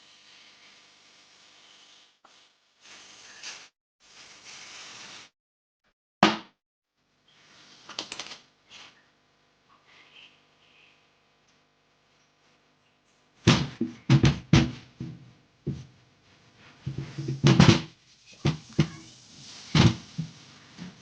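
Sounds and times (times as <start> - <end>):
hard knocks and thuds: 13.4 - 15.9, 16.9 - 19.1, 19.7 - 21.0.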